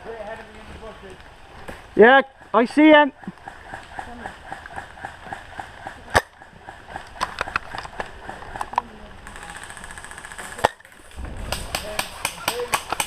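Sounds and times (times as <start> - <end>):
airsoft gun shot: 10.6 - 13.0.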